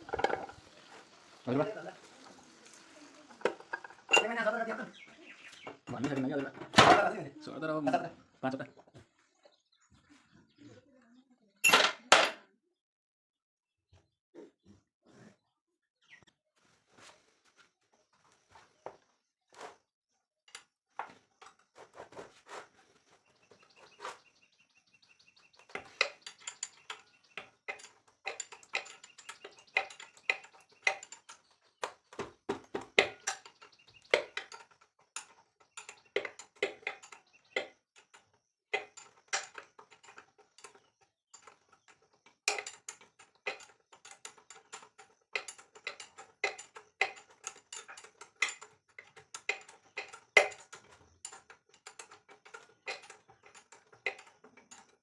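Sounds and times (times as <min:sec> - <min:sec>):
metal tools clinking and knocking: 0:00.0 - 0:00.7, 0:03.3 - 0:07.1, 0:11.6 - 0:12.4, 0:25.0 - 0:55.0.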